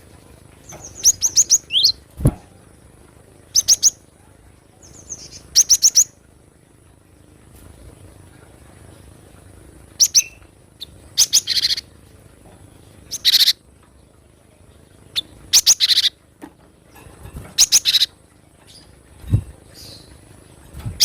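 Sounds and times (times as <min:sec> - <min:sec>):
bird calling with buzzy rattle: 0:00.6 - 0:02.7, 0:03.5 - 0:04.0, 0:04.8 - 0:06.3, 0:09.9 - 0:12.0, 0:12.7 - 0:13.8, 0:15.0 - 0:16.2, 0:16.8 - 0:21.0.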